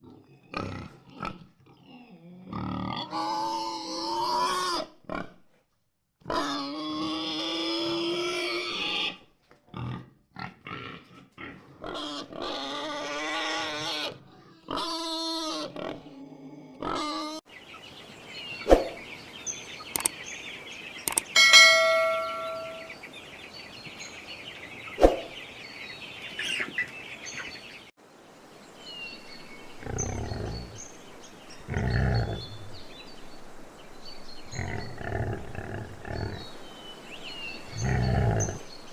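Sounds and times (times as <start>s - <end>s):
pigs grunting: 0.0s - 5.4s, 6.2s - 17.4s, 29.7s - 31.0s, 31.6s - 33.0s, 34.4s - 36.7s, 37.6s - 38.9s
pigs squealing: 0.5s - 5.3s, 6.3s - 9.2s, 9.8s - 17.4s.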